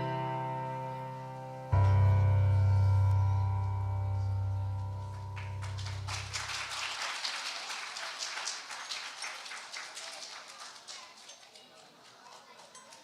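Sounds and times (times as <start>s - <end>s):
audience applause: 5.4s - 13.0s.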